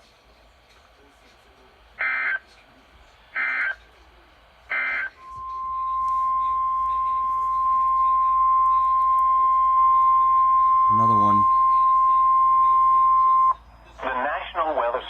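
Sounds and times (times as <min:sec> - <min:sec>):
steady high alert tone: 0:04.7 - 0:13.6
electronic data bursts: 0:04.7 - 0:13.8.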